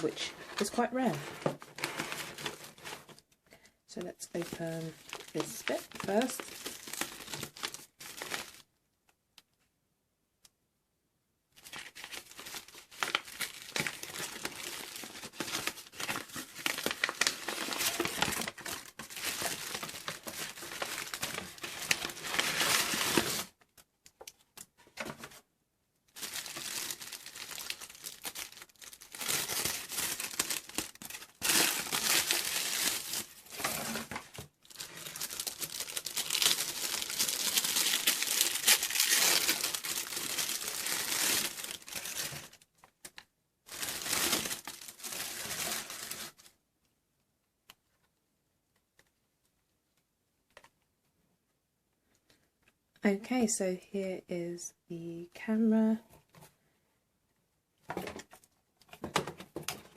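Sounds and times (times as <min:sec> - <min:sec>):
paper packaging crinkling and tearing: 0:00.0 - 0:03.2, 0:04.0 - 0:08.7, 0:11.6 - 0:23.6, 0:26.1 - 0:46.6.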